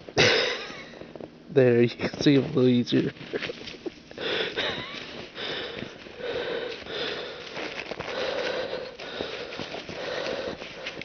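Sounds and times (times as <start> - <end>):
heavy breathing through nose: 4.1 - 11.0.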